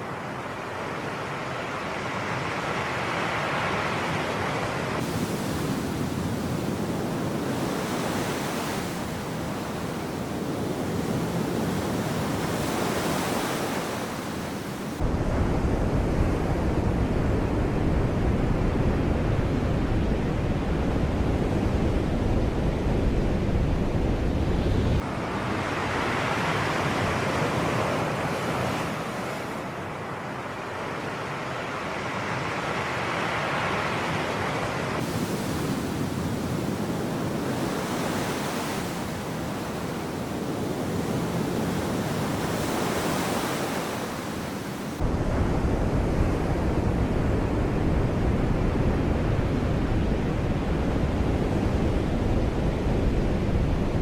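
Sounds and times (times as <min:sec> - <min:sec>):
waves washing: 0:04.6 - 0:15.1, 0:32.0 - 0:45.5
wind on microphone: 0:05.0 - 0:25.8, 0:34.9 - 0:54.0.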